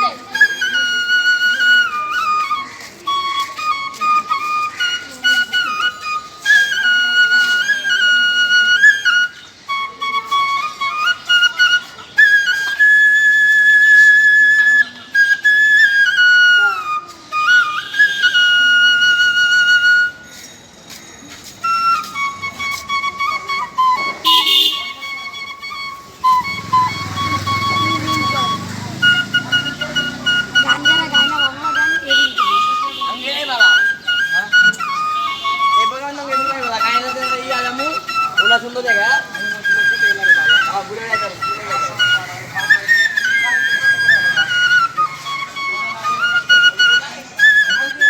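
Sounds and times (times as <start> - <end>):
bamboo flute melody: 0.0 - 48.0.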